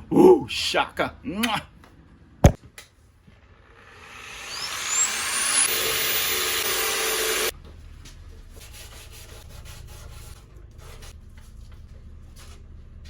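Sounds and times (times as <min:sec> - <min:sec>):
sander whining: 0:03.6 - 0:07.5.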